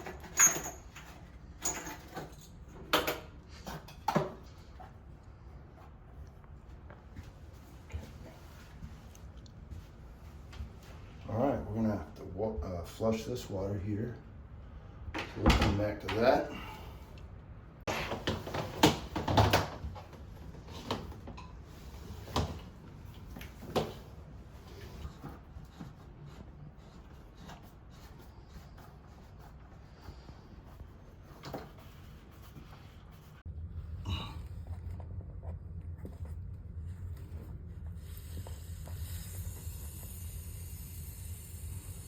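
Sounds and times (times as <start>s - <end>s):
low steady hum: 0.0s - 42.0s.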